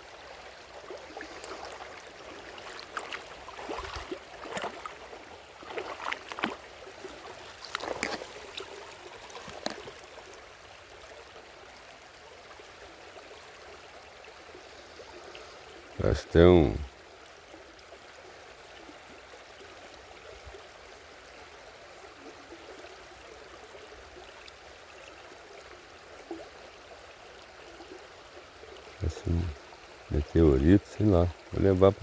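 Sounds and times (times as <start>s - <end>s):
stream water running: 0.0s - 32.0s
water splashes and knocks: 1.2s - 10.1s.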